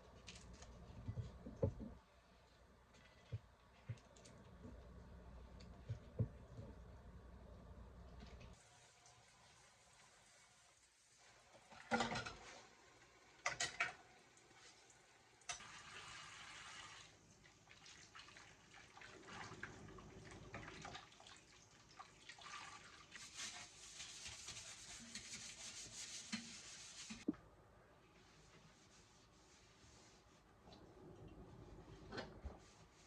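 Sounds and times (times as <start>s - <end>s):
running water in sink: 8.5s - 27.3s.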